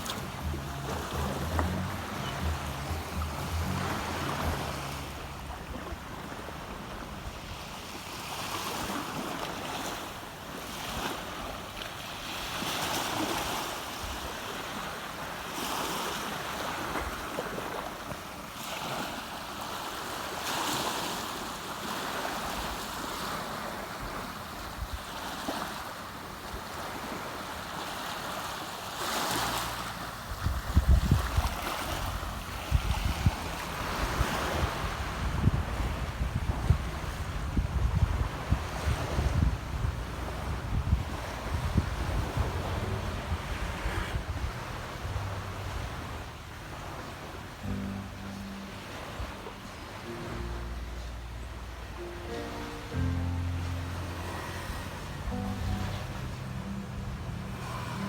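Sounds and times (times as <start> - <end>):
waves washing onto beach: 0.0 - 58.0
wind buffeting microphone: 30.2 - 47.1.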